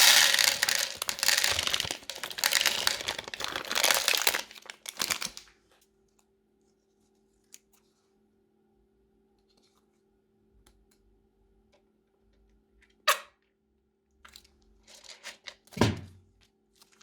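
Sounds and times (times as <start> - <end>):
plastic clicks and crackles: 0.0 - 5.5.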